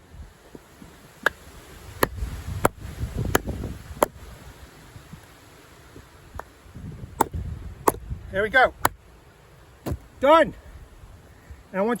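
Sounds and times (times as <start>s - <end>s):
blade chopping into log: 1.2s - 4.2s, 7.2s - 8.1s, 9.8s - 10.1s.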